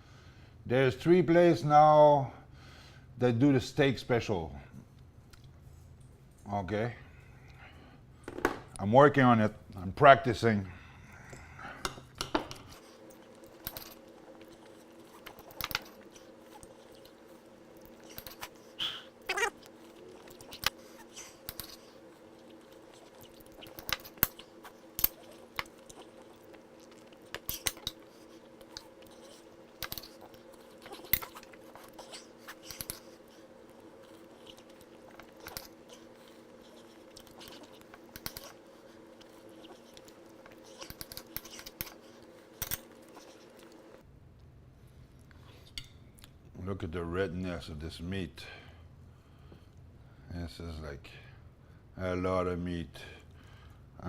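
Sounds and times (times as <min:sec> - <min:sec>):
steady low hum: 0:00.0 - 0:54.0
person chewing: 0:13.0 - 0:44.0.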